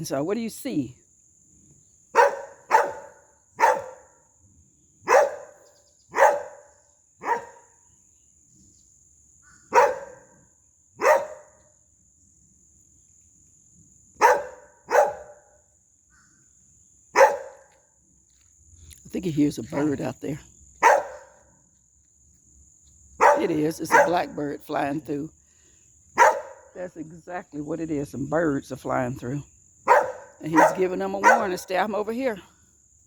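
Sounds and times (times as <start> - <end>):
dog barking: 2.1 - 4.2, 5.0 - 7.8, 9.7 - 10.4, 11.0 - 11.6, 14.2 - 15.5, 17.1 - 17.8, 20.8 - 21.5, 23.2 - 24.4, 26.2 - 26.8, 29.9 - 31.7.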